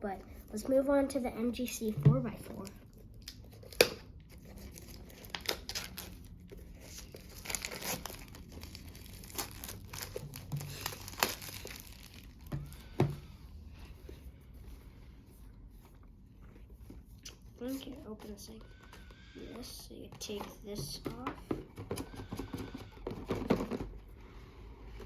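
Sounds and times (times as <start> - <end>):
packaging crinkling and rustling: 2.4 - 13.3.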